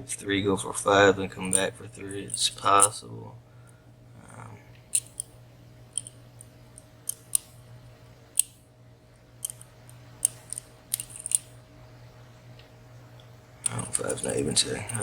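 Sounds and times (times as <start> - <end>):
lock picks clicking in padlock: 1.5 - 3.0, 4.9 - 5.3, 5.9 - 7.6, 8.4 - 8.6, 9.4 - 11.5, 13.6 - 15.0.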